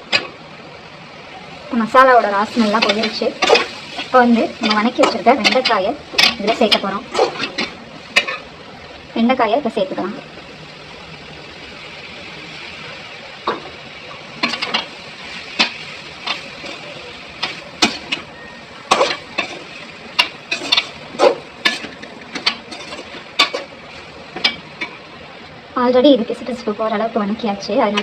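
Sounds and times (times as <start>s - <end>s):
food sizzling: 0.0s - 28.0s
spoon scraping a pan: 2.4s - 8.5s, 18.9s - 23.8s.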